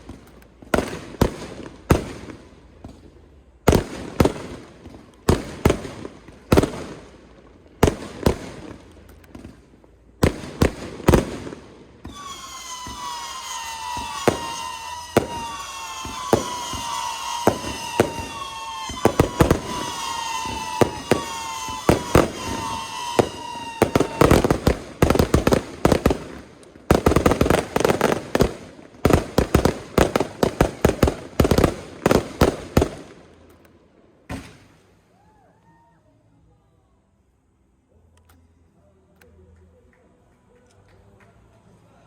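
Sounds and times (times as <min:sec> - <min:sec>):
fireworks bangs: 0:00.0 - 0:07.2, 0:07.8 - 0:33.2
fireworks whistling: 0:10.2 - 0:33.1.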